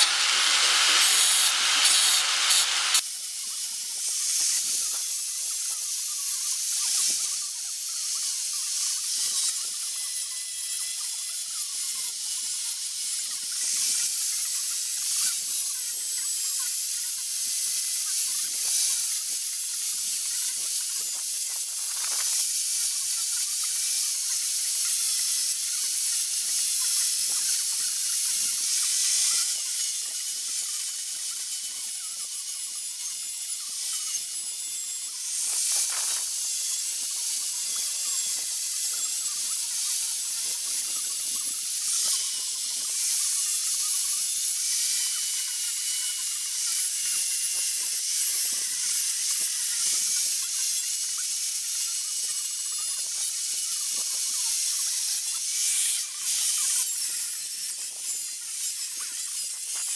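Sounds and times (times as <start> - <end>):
high-speed power tool whining: 0.0 - 3.6.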